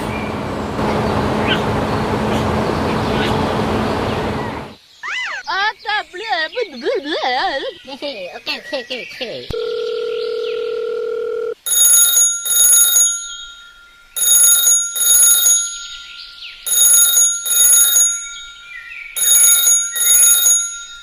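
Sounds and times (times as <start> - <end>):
dial tone: 9.6 - 13.1
telephone ringing: 9.6 - 16.0, 16.7 - 21.0.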